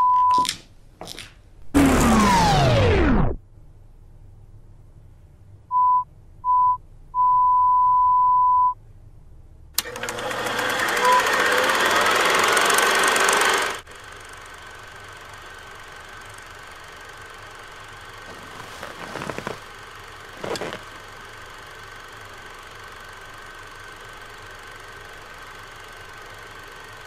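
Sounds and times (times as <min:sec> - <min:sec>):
low hum: 0:01.6 - 0:07.5.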